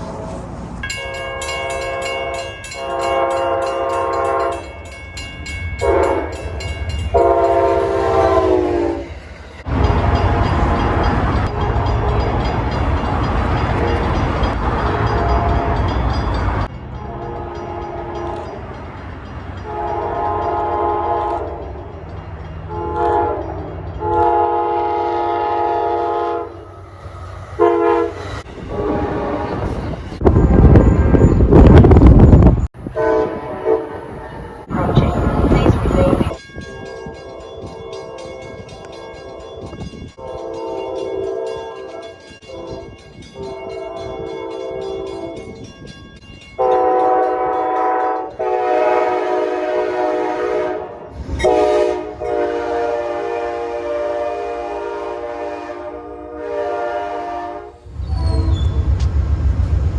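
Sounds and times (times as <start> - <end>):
train rumbling and clattering: 0.0 - 59.9
locomotive air horn: 1.0 - 4.7, 5.8 - 6.4, 7.1 - 12.4, 14.8 - 15.9, 19.6 - 21.6, 22.7 - 26.8, 27.6 - 29.8, 32.8 - 36.4, 40.2 - 45.4, 46.6 - 58.8.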